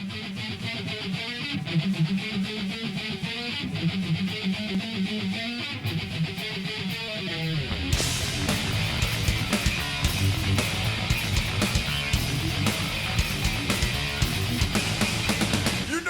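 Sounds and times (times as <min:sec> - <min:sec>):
electric guitar fast picked run: 0:00.1 - 0:15.9
full band playing: 0:08.0 - 0:16.0.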